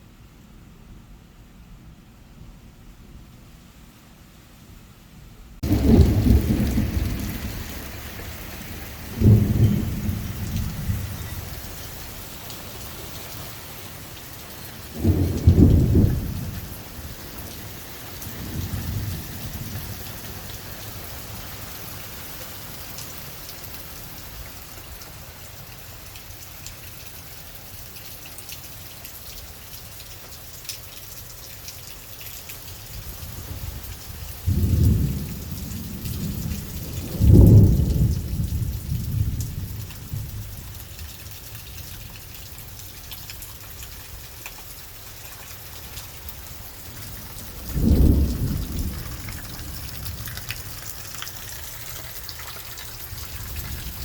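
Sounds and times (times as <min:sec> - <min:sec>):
thunder rumbling: 0:05.6 - 0:12.2, 0:14.8 - 0:20.6, 0:33.2 - 0:40.8, 0:46.8 - 0:54.0
heavy rain: 0:05.6 - 0:54.0.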